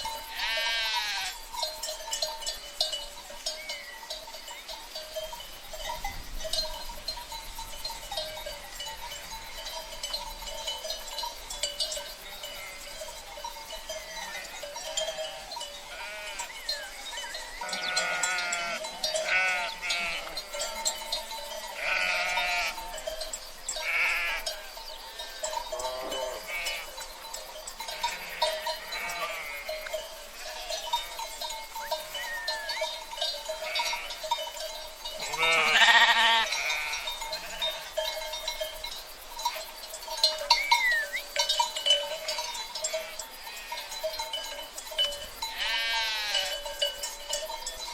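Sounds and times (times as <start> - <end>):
sheep bleating: 0.3 - 1.4, 14.3 - 16.5, 17.6 - 20.8, 21.8 - 22.8, 23.8 - 24.4, 25.8 - 26.9, 27.9 - 29.7, 35.2 - 37.9, 45.5 - 46.6.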